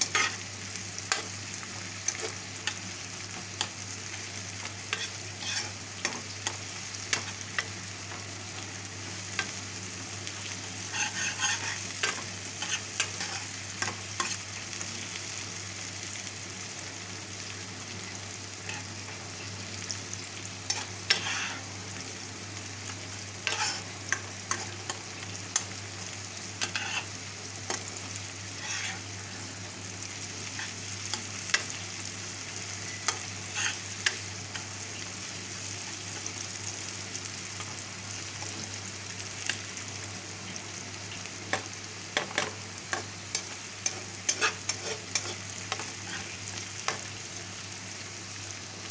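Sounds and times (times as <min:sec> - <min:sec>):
spatula scraping a pan: 0:00.0 - 0:00.4, 0:04.9 - 0:07.7, 0:10.7 - 0:14.4, 0:18.6 - 0:18.9, 0:20.7 - 0:21.7, 0:23.4 - 0:25.7, 0:26.6 - 0:29.4, 0:30.4 - 0:31.8, 0:32.8 - 0:34.8, 0:42.2 - 0:47.0
onions sizzling in oil: 0:00.0 - 0:48.9.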